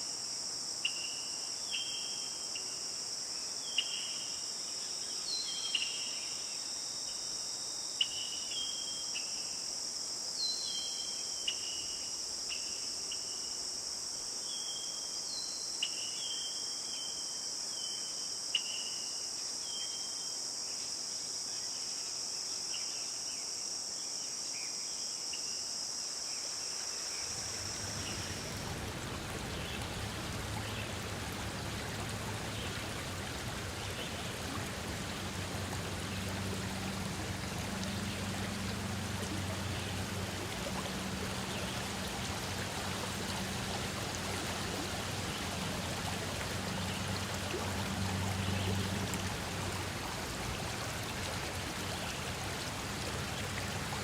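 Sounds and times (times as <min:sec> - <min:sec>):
insects chorus: 0:00.0 - 0:54.0
stream rushing: 0:27.0 - 0:54.0.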